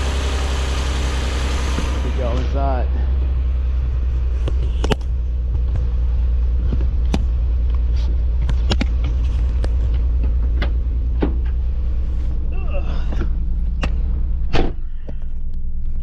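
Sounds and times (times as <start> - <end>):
car engine idling: 0.0 - 16.0
sharp clicks and knocks: 6.6 - 7.8, 8.4 - 11.6.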